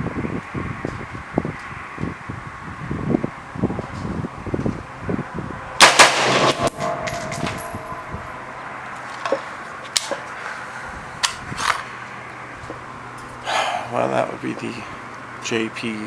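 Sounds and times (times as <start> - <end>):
rifle shots: 5.8 - 7.8.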